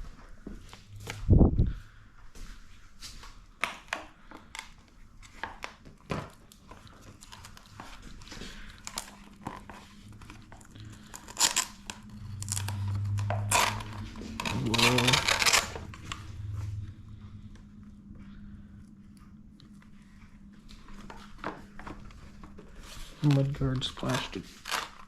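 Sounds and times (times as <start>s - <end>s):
low hum: 0.0s - 3.0s, 6.8s - 23.9s.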